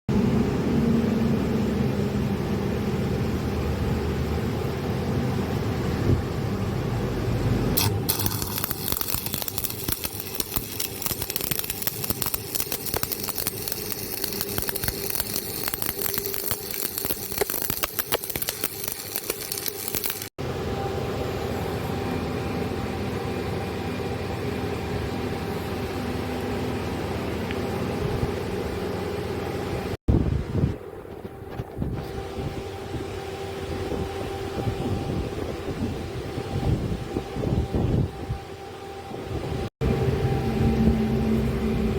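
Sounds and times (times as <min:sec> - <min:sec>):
welding machine humming: 0:07.7 - 0:23.3
welding arc hissing: 0:07.8 - 0:20.3.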